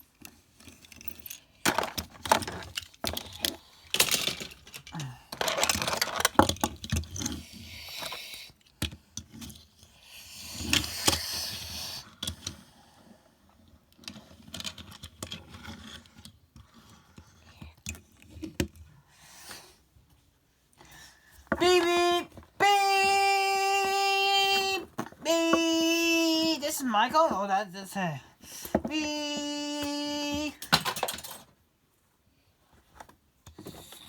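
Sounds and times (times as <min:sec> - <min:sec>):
toy cars clattering: 0:00.5 - 0:07.4, 0:29.8 - 0:31.6.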